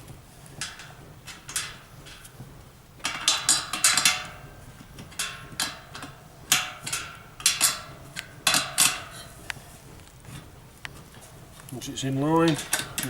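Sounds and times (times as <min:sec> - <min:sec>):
metal bracket scraping and knocking: 0:03.0 - 0:13.0.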